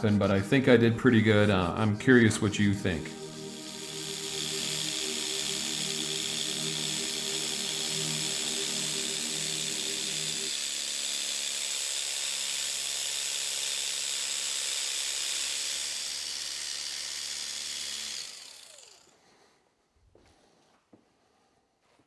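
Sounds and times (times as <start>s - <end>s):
electric polisher whining: 1.2s - 19.2s.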